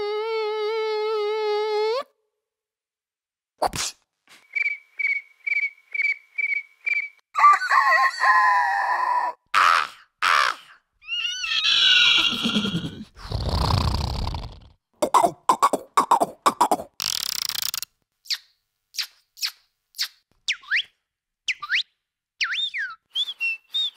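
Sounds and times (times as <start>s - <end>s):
mouth-made chirps: 4.4s - 7.2s, 15.1s - 23.9s.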